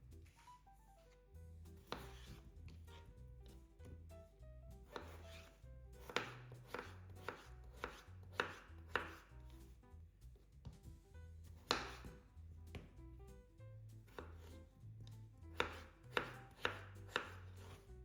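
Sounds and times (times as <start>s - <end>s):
soft background music: 0.0s - 18.0s
knife chopping on cutting board: 1.8s - 4.1s, 4.8s - 9.8s, 10.5s - 13.0s, 14.0s - 17.9s.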